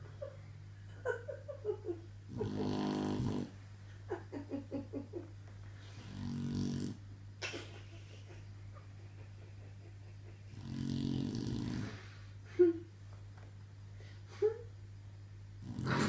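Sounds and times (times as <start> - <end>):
dog snoring: 2.3 - 3.6, 6.0 - 7.0, 10.5 - 12.2, 15.6 - 16.0.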